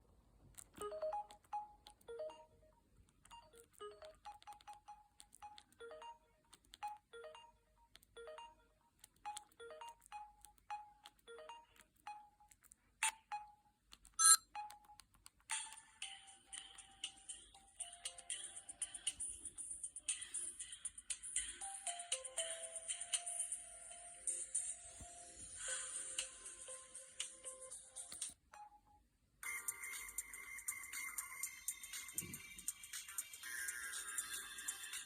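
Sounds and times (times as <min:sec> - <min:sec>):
mobile phone ringtone: 0:00.8 - 0:15.0
bright electronic tone: 0:14.2 - 0:14.4.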